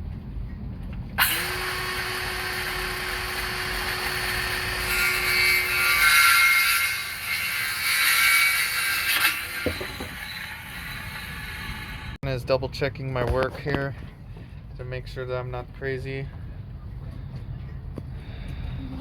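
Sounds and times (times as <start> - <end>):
power tool working wood: 1.2 - 12.2.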